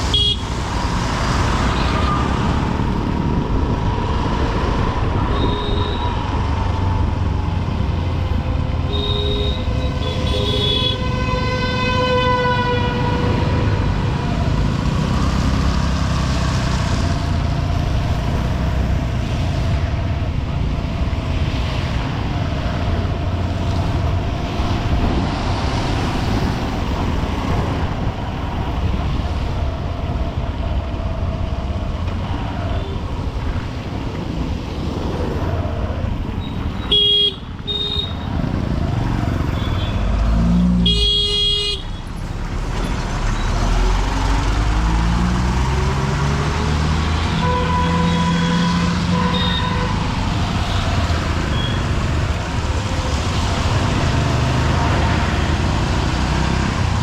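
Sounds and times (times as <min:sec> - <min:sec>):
city traffic: 0:00.0 - 0:57.0
vehicle horns honking: 0:00.1 - 0:00.5, 0:08.9 - 0:13.5, 0:36.4 - 0:38.3, 0:40.8 - 0:42.0, 0:47.2 - 0:50.8, 0:51.5 - 0:52.0.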